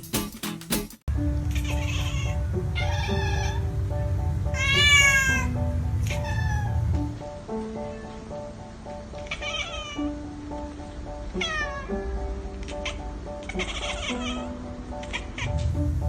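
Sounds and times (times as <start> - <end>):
background music: 0.0 - 16.0
cat meowing: 1.5 - 3.7, 4.6 - 7.0, 9.2 - 10.2, 11.4 - 12.0, 12.7 - 15.6.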